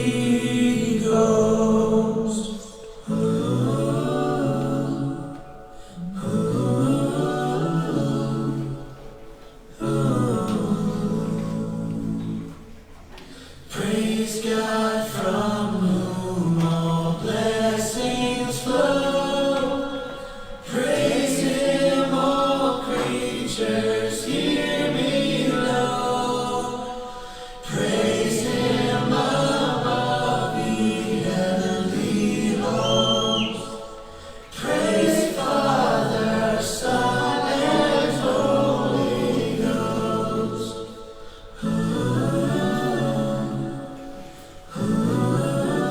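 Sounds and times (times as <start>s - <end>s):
choir singing sacred music: 0.0s - 45.9s.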